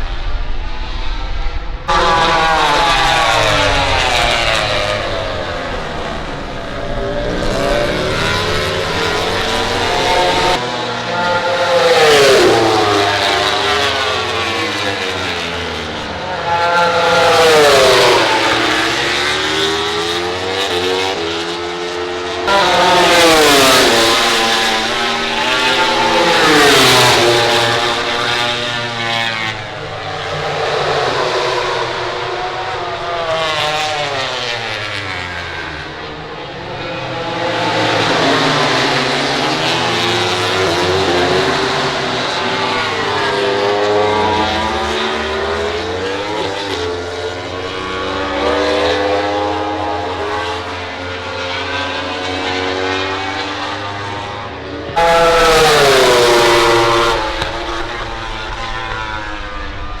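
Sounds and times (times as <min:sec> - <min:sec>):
racing motorcycles passing: 0:00.0 - 1:00.0.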